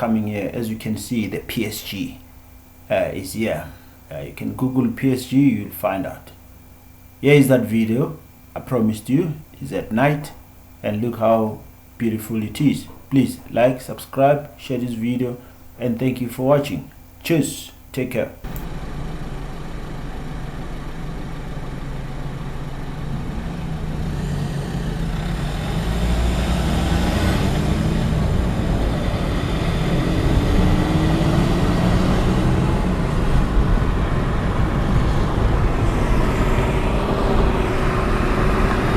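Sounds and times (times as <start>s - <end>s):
traffic noise: 18.4s - 38.9s
vehicle engine rumble: 18.4s - 38.9s.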